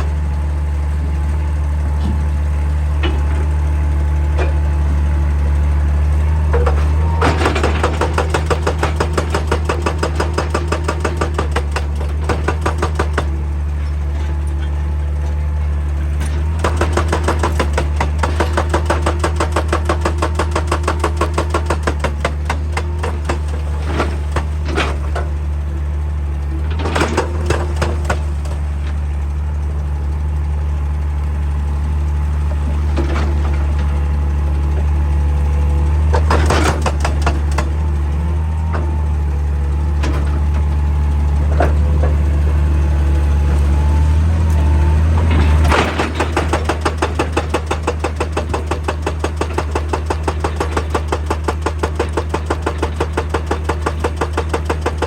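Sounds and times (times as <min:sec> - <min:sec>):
excavator diesel engine running: 0:00.0 - 0:55.0
hydraulic rock breaker hammering: 0:00.0 - 0:55.0.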